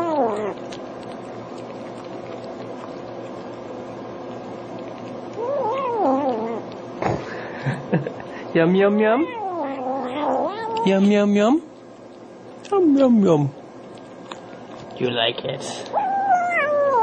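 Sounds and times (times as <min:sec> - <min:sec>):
kitten mewing: 0:00.0 - 0:00.8, 0:05.4 - 0:06.7, 0:09.2 - 0:11.1, 0:15.9 - 0:17.0
steady low hum: 0:00.0 - 0:17.0.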